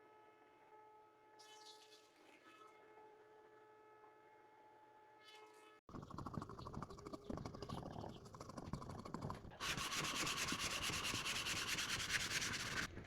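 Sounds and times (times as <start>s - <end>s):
wood being sanded: 9.6s - 12.9s.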